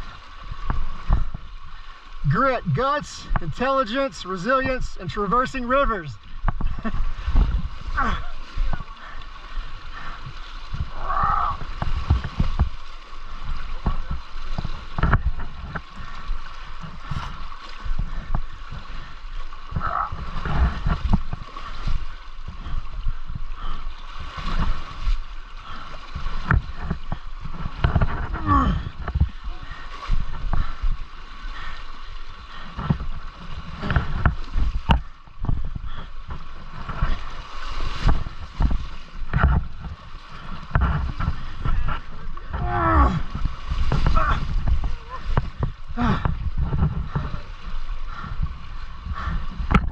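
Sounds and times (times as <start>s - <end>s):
river water rushing: 0.0s - 35.5s, 36.1s - 46.6s
splashing: 0.0s - 48.4s.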